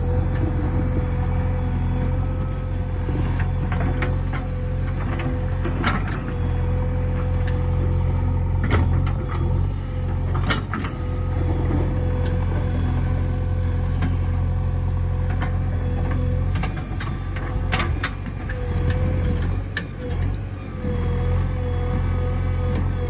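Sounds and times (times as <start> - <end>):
diesel engine running with whine: 0.0 - 23.0.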